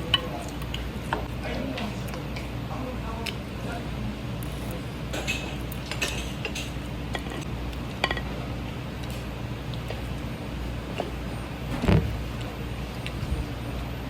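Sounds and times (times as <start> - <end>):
utensils clinking against a dish: 0.0 - 2.5, 4.4 - 8.4
steady low hum: 0.0 - 14.0.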